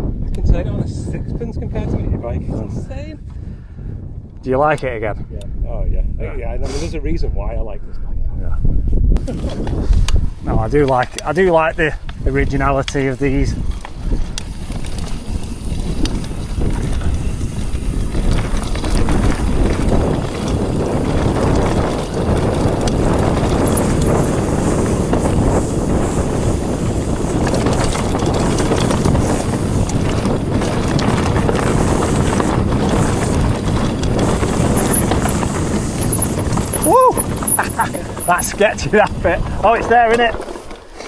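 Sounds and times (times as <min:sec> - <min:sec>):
wind buffeting microphone: 0:00.0 - 0:41.0
bike tyres rattling over rocks: 0:09.2 - 0:41.0.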